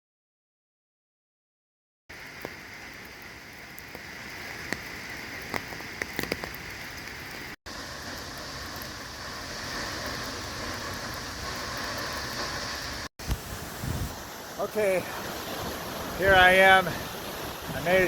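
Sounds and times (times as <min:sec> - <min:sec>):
heavy rain hissing: 0:02.1 - 0:18.0
raindrop taps: 0:02.4 - 0:07.5.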